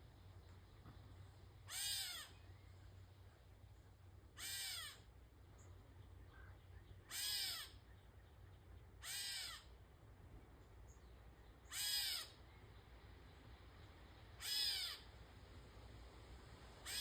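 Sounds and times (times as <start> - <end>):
catbird mewing calls: 1.6 - 2.4, 4.4 - 5.1, 7.1 - 7.9, 9.0 - 9.8, 11.6 - 12.4, 14.4 - 15.1.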